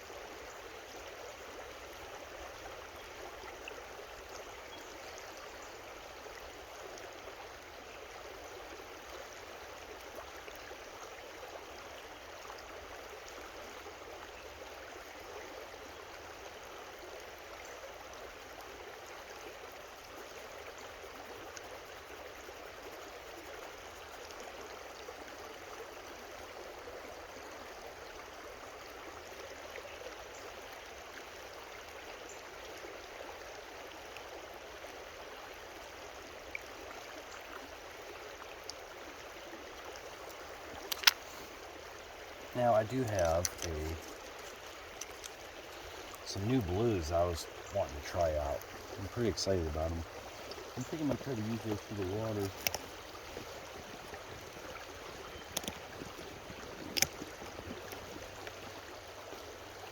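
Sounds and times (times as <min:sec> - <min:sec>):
creek water rushing over rocks: 0:00.0 - 0:59.9.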